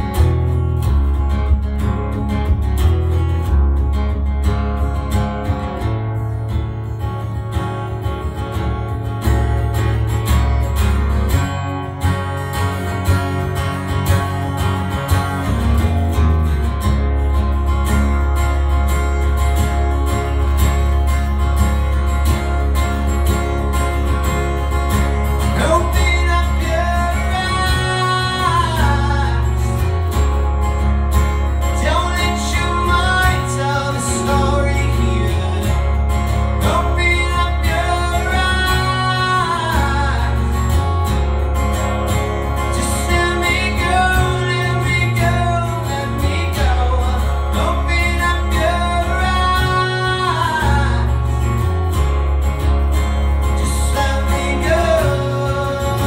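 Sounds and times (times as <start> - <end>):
low bass: 0.0 - 56.0
rock guitar melody: 0.0 - 56.0.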